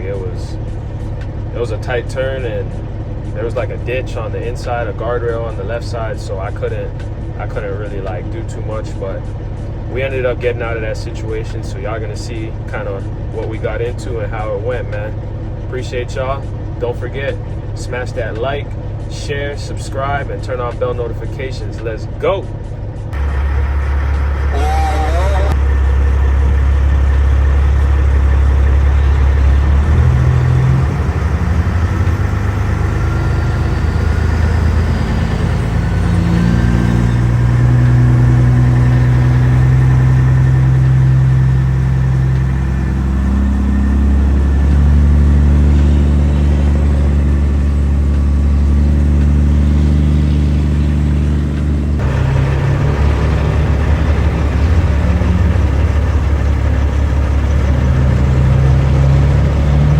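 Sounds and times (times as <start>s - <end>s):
truck diesel engine shifting gears: 0.0s - 59.9s.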